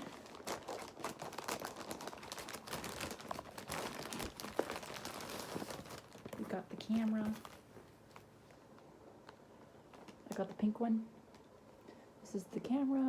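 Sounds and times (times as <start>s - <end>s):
packaging crinkling: 0.0s - 10.4s.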